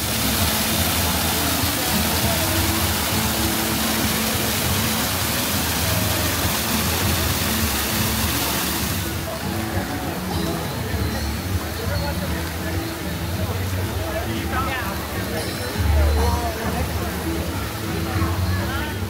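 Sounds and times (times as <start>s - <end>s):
water falling and splashing: 0.0s - 19.0s.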